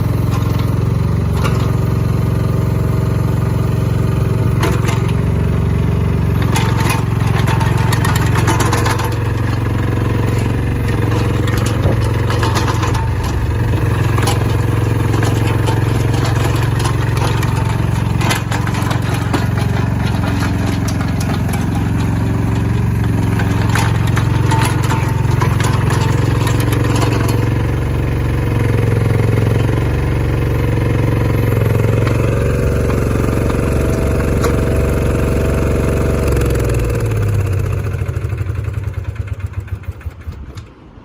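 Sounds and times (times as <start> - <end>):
diesel engine running: 0.0 - 41.0
machine clicks and knocks: 6.3 - 27.7.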